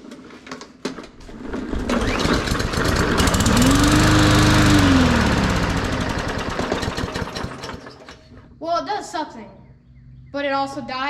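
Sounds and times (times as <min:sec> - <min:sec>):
lawn mower engine: 0:01.3 - 0:08.4.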